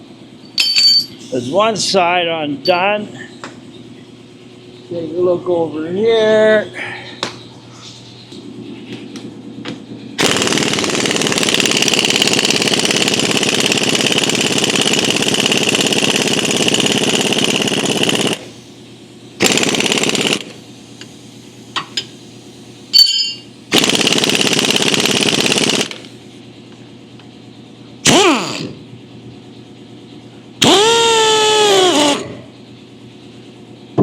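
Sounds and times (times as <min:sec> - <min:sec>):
impact wrench hammering: 0:00.5 - 0:01.2, 0:23.0 - 0:26.0.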